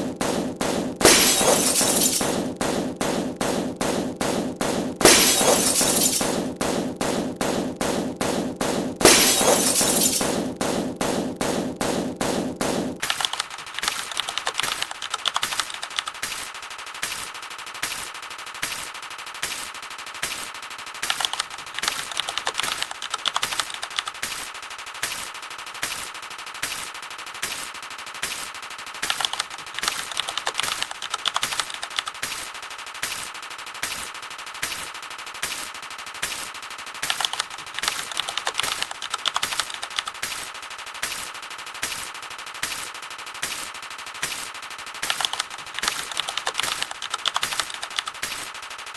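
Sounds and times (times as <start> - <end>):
rapid sharp clicks: 0.0 - 17.2, 21.0 - 24.4, 28.3 - 33.2, 37.0 - 48.5
glass breaking crash: 1.0 - 2.3, 5.0 - 6.4, 9.0 - 10.4.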